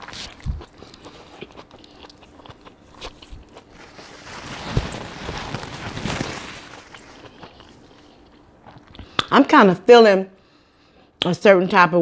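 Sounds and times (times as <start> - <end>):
person biting and chewing food: 0.0 - 9.3.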